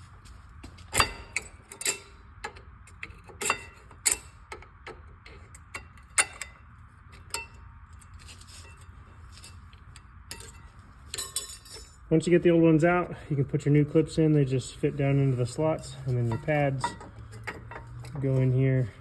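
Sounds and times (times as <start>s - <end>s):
sharp metal clicks and scrapes: 0.8s - 6.6s.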